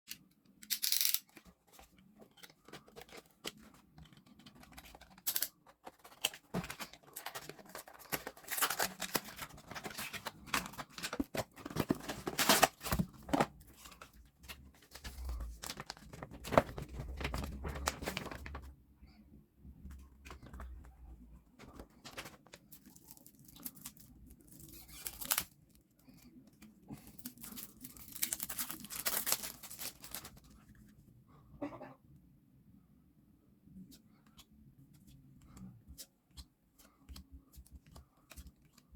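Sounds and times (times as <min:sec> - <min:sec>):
packaging tearing and crinkling: 0:04.6 - 0:13.5, 0:22.0 - 0:25.6, 0:27.2 - 0:30.4.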